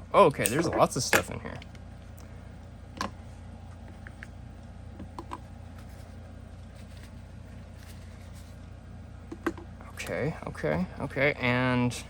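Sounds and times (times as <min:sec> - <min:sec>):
low background hum: 0:00.0 - 0:12.0
items rustling in cardboard package: 0:05.7 - 0:08.7.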